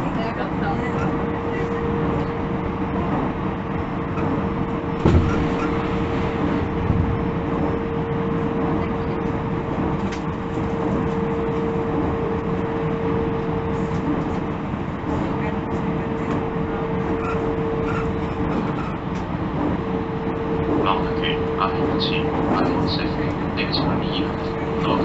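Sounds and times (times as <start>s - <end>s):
constant high whine: 0.0s - 25.0s
train running noise: 0.0s - 25.0s.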